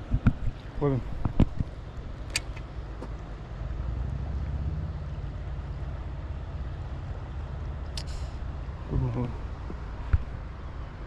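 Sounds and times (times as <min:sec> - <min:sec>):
wind buffeting microphone: 0:00.0 - 0:02.2
sharp click: 0:02.3 - 0:02.7, 0:07.9 - 0:08.2.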